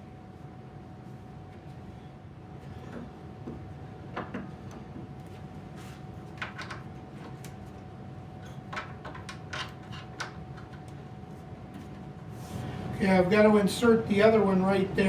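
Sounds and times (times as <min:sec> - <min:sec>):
background hum: 0:00.0 - 0:15.0.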